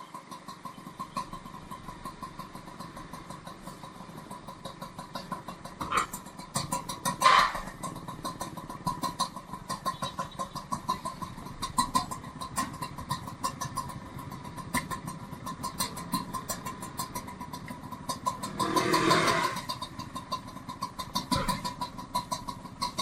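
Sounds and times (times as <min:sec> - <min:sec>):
small engine ticking: 0:00.0 - 0:23.0
rushing sound: 0:18.4 - 0:19.7.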